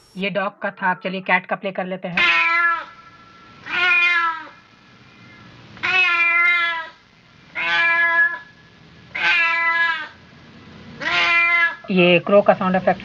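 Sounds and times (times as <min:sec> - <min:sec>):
cat meows: 0:02.2 - 0:03.0, 0:03.6 - 0:04.6, 0:05.8 - 0:07.0, 0:07.6 - 0:08.5, 0:09.1 - 0:10.2, 0:11.0 - 0:11.9.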